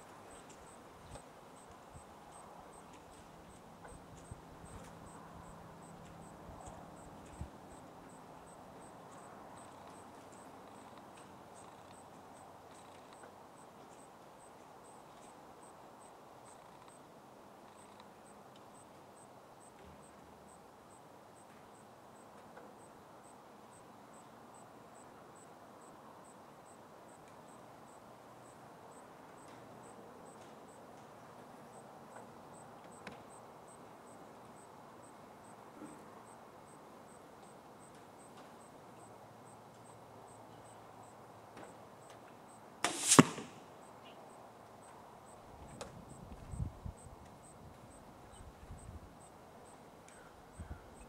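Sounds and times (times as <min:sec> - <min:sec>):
arrow striking target: 0:42.8 - 0:43.7
bow shot: 0:42.8 - 0:43.7.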